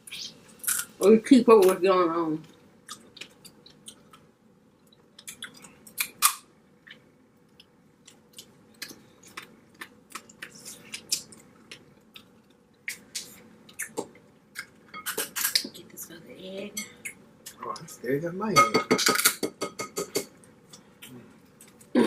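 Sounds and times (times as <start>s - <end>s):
chewing with crunches: 2.8s - 15.7s.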